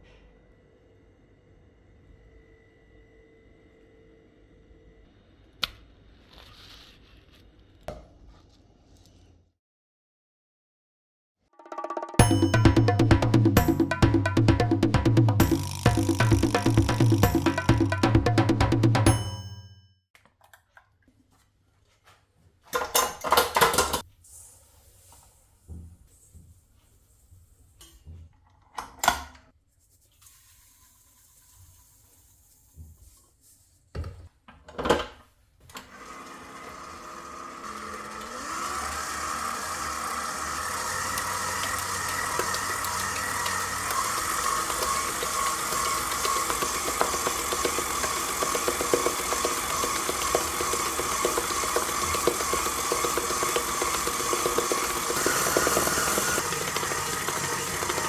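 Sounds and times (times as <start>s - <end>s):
electric mixer running: 12.2s - 19.2s, 35.8s - 58.0s.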